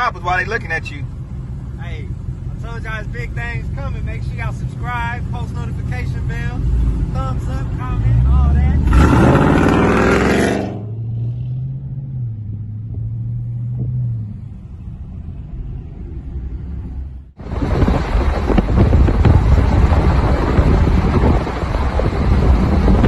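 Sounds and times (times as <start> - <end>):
car exhaust rumble: 0.0 - 23.0
wind on microphone: 12.4 - 23.0.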